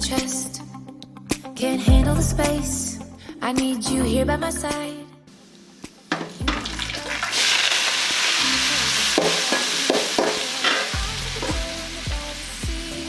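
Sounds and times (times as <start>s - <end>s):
pop music with drum beat: 1.3s - 3.9s, 5.8s - 7.6s, 8.4s - 13.0s
food sizzling in oil: 5.3s - 13.0s.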